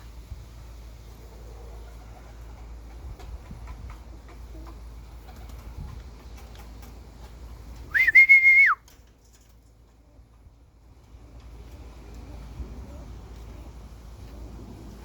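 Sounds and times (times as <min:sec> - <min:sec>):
wind rumble on microphone: 0:02.7 - 0:04.7, 0:05.3 - 0:06.5, 0:10.4 - 0:15.0
loud whistle: 0:07.9 - 0:08.8.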